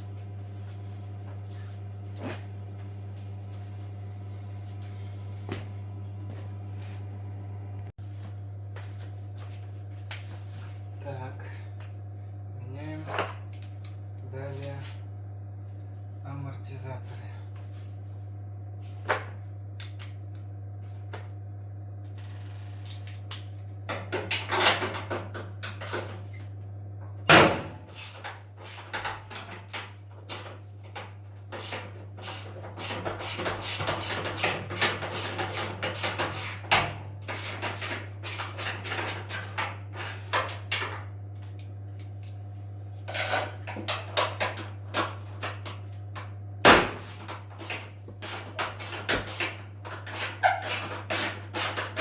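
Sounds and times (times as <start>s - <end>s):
steady low hum: 0.0s - 52.0s
tools and parts clattering: 28.0s - 42.4s, 43.1s - 45.9s.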